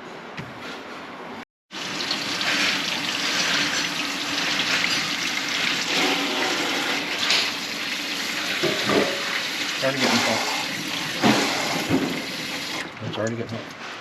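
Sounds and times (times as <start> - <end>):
water running from a faucet: 1.7 - 12.9.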